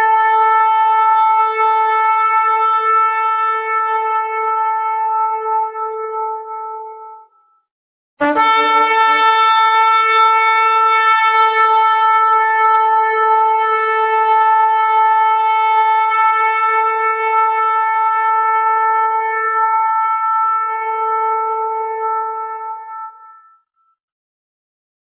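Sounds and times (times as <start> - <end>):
ram's horn blast: 8.2 - 23.6.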